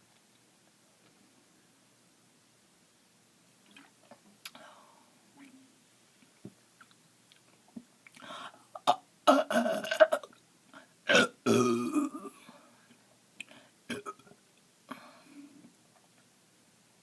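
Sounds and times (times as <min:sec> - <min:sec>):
person burping: 0:08.8 - 0:10.4, 0:11.1 - 0:12.4, 0:13.9 - 0:14.3.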